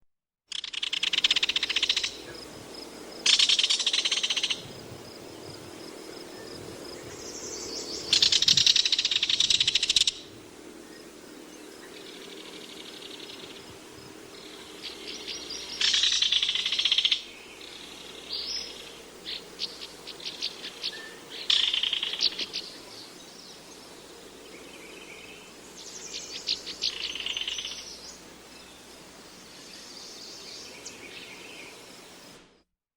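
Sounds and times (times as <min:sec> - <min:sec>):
bird trilling: 0:19.6 - 0:22.7
bird chirps: 0:24.7 - 0:28.8.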